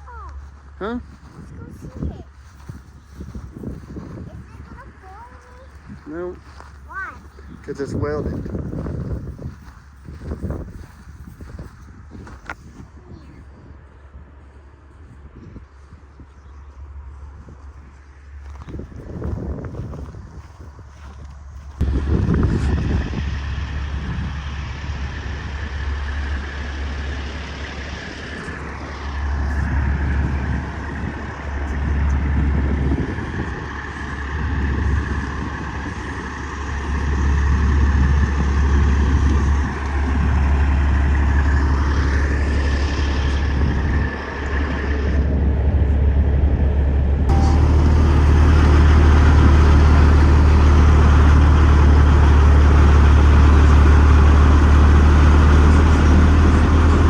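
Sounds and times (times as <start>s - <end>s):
truck engine drone: 13.6s - 57.0s
higher tones rising and falling: 47.3s - 54.0s.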